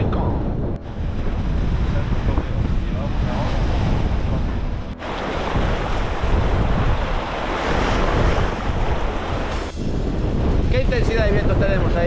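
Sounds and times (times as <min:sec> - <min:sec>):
waves rushing: 0:00.0 - 0:12.0
wind buffeting microphone: 0:00.0 - 0:12.0.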